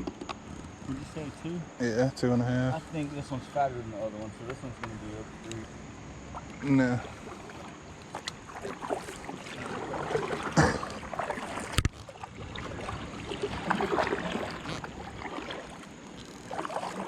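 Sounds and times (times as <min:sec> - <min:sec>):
knocks and rustles on kayak: 0:00.0 - 0:01.4, 0:06.3 - 0:17.0
water washing: 0:06.3 - 0:17.0.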